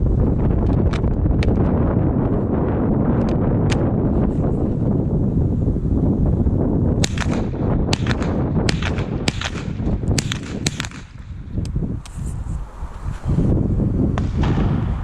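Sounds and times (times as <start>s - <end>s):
wind rumble on microphone: 0.0s - 15.0s
rifle shots: 7.0s - 11.4s.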